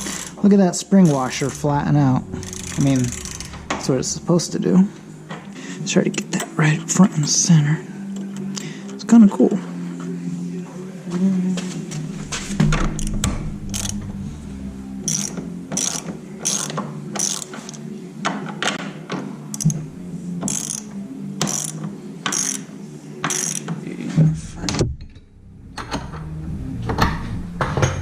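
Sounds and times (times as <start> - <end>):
ratchet wrench clicking: 2.4 - 3.5, 13.0 - 14.0, 15.0 - 17.8, 19.5 - 19.8, 20.4 - 23.7.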